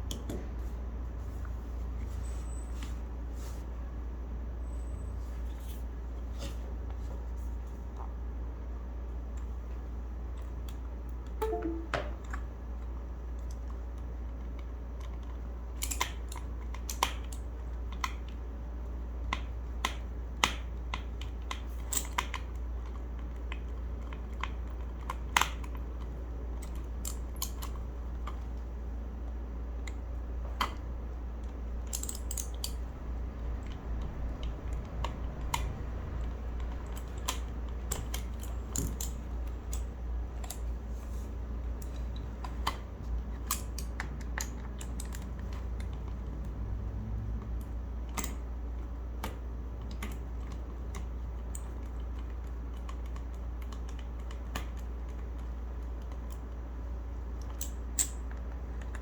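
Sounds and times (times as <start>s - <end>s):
keyboard clicks and knocks: 11.4s - 12.4s.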